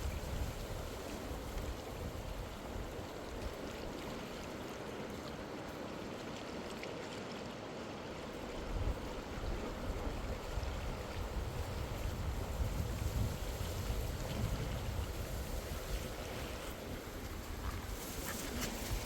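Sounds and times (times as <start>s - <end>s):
wind buffeting microphone: 0.0s - 4.0s, 8.4s - 19.0s
stream water flowing: 0.0s - 19.0s.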